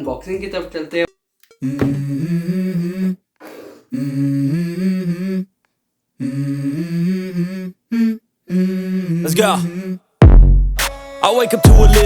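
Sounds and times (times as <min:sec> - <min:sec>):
person humming a melody: 0:01.6 - 0:05.6, 0:06.2 - 0:10.1.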